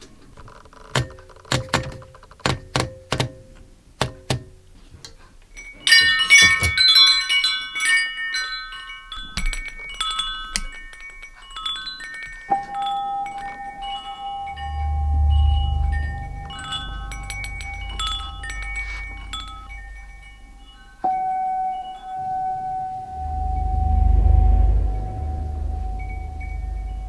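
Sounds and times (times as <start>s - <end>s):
typewriter key strikes: 0.4s - 4.7s, 6.0s - 7.0s
wind chime tinkling: 5.5s - 27.0s
steady ringing tone: 5.6s - 27.0s.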